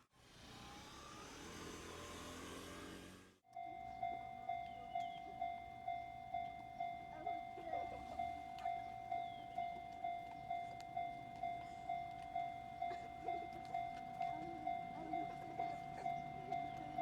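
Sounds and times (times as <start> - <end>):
level-crossing warning bell: 3.5 - 17.0.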